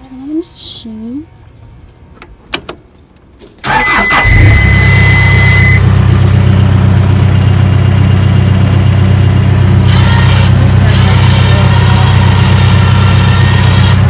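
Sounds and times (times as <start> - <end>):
vehicle engine starting and idling: 3.5 - 14.0
steady high beep: 4.0 - 5.8.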